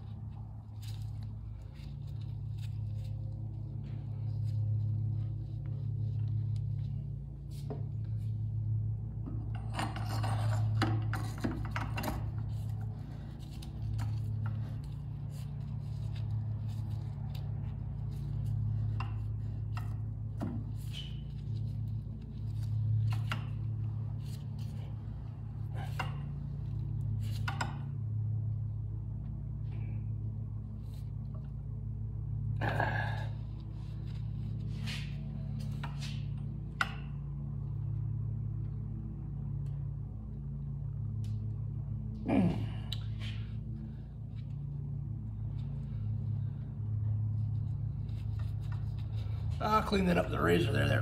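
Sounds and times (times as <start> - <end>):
steady low hum: 0.0 - 51.0
hands rubbing and scraping parts: 9.2 - 28.0, 33.3 - 37.6, 47.2 - 51.0.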